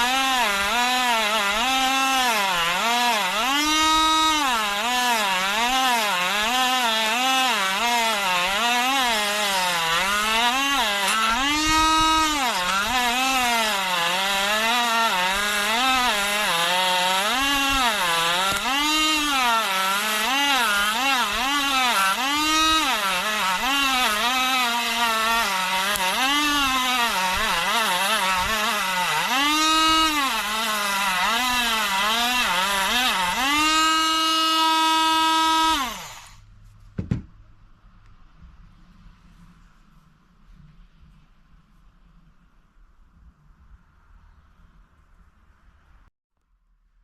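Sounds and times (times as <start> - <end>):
rotary tool whining: 0.0 - 36.4.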